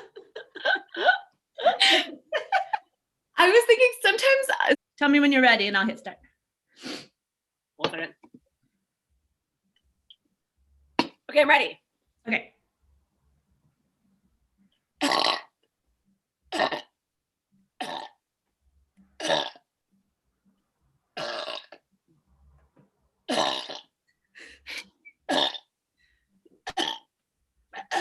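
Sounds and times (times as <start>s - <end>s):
woman burping: 15.0s - 15.5s, 16.5s - 16.9s, 17.8s - 18.2s, 19.2s - 19.6s, 21.2s - 21.8s, 23.3s - 23.9s, 25.2s - 25.7s, 26.6s - 27.1s, 27.8s - 28.0s.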